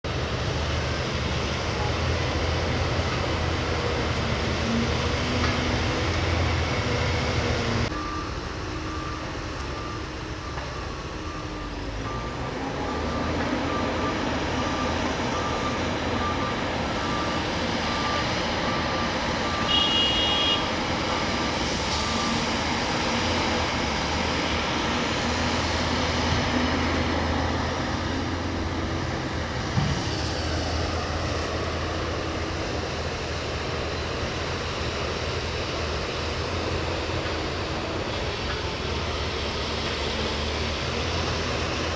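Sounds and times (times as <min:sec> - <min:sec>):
diesel engine running: 0:00.0 - 0:41.9
reversing alarm beeping: 0:04.4 - 0:32.4.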